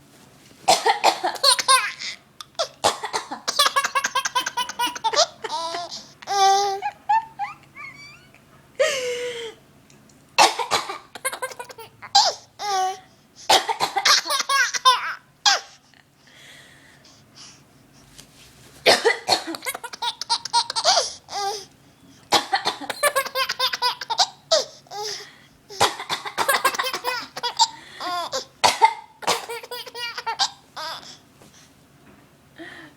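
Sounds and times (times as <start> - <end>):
woman coughing: 0.7 - 1.8, 2.8 - 5.2, 10.4 - 11.4, 13.5 - 14.2, 18.9 - 19.7, 25.8 - 27.8, 28.6 - 30.1
baby laughing: 1.3 - 2.8, 3.4 - 8.4, 11.2 - 13.0, 14.0 - 15.7, 19.6 - 21.7, 22.9 - 25.2, 26.3 - 28.5, 29.2 - 31.1.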